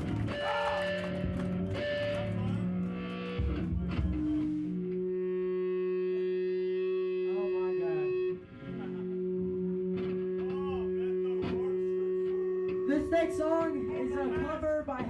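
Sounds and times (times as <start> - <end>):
faint voices: 0.0 - 4.6, 8.7 - 15.0
electric guitar droning tone: 0.0 - 15.0.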